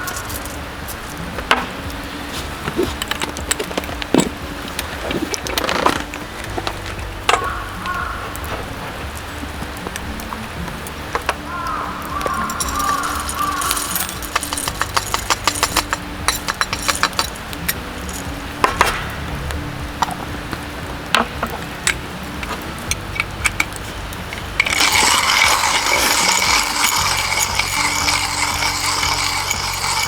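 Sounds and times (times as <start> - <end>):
faint background music: 0.0 - 30.0
steady hiss: 0.0 - 30.0
metal cookware clinking: 11.2 - 19.1, 22.8 - 30.0.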